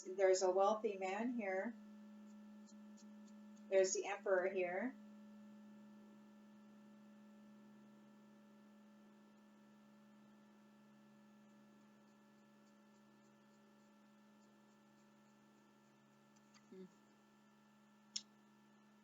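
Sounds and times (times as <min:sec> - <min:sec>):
faint electrical hum: 0:00.0 - 0:19.0.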